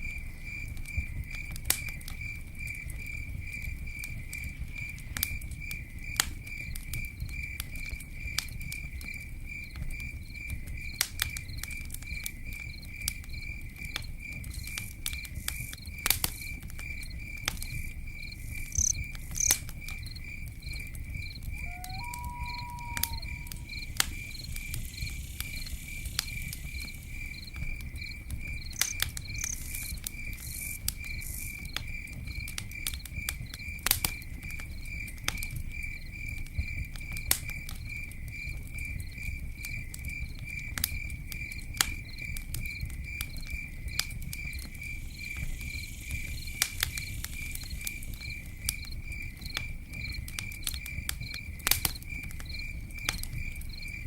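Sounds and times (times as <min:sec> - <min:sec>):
campfire crackling and popping: 0:00.0 - 0:54.0
insect chirping: 0:10.3 - 0:34.9, 0:41.4 - 0:54.0.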